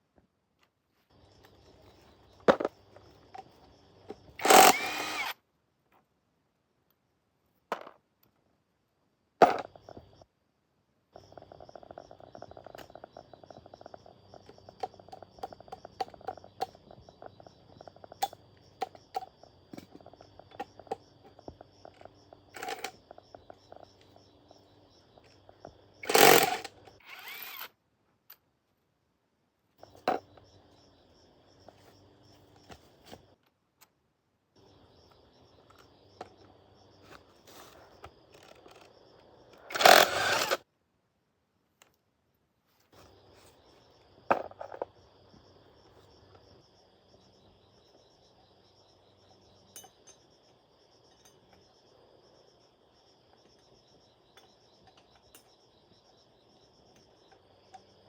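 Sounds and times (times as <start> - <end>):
power tool bursts: 4.4 - 5.4, 26.0 - 27.7, 39.7 - 40.6.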